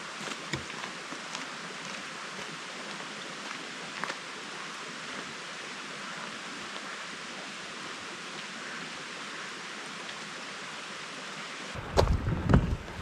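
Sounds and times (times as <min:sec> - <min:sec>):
steady outdoor hiss: 0:00.0 - 0:13.0.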